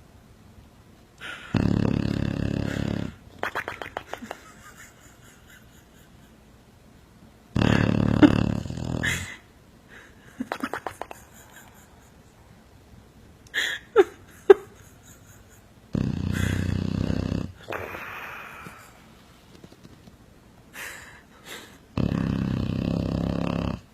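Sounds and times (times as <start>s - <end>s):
dog snoring: 1.3s - 3.2s, 7.5s - 9.4s, 15.9s - 18.5s, 21.9s - 23.9s.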